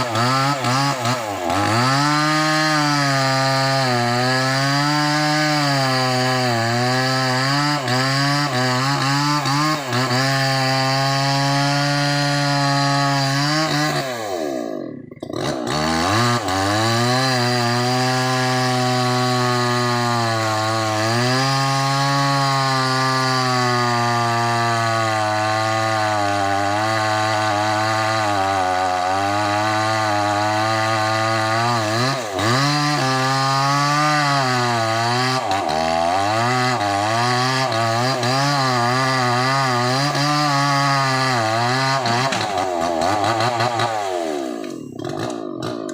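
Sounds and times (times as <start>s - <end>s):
chainsaw cutting a log: 0.0s - 45.9s.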